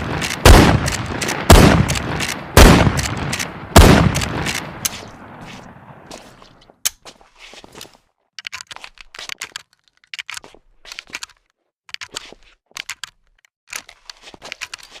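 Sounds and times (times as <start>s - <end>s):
metallic gun clicks and clacks: 0.0s - 5.2s, 7.8s - 15.0s
rifle shot crack: 0.0s - 6.1s.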